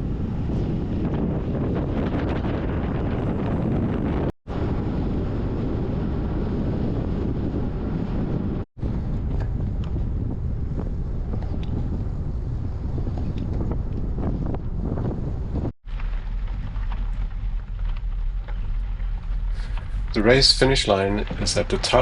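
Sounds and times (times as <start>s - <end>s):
wind buffeting microphone: 0.0s - 22.0s
bike rolling on gravel: 8.8s - 22.0s
small stone ticks: 15.9s - 20.2s.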